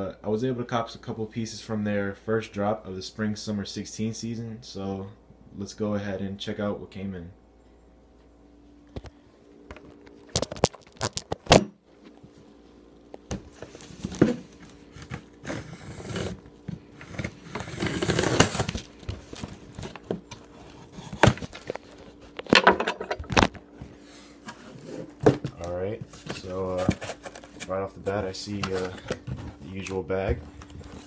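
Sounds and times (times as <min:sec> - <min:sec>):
packaging tearing and crinkling: 0:10.3 - 0:11.5, 0:17.0 - 0:22.6.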